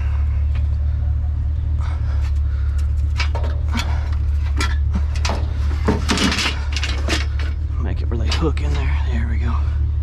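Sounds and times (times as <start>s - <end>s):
steady low hum: 0.0s - 10.0s
scrap metal clinking and scraping: 2.7s - 8.9s.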